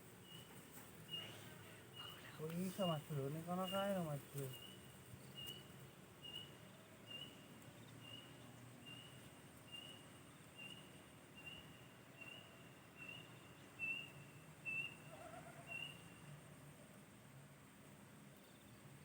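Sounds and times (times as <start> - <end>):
faint outdoor hiss: 0.0 - 19.0.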